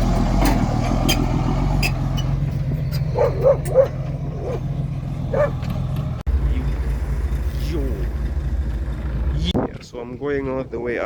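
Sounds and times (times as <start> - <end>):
vehicle engine running: 0.0 - 9.6
dog barking: 3.1 - 4.6, 5.3 - 5.6.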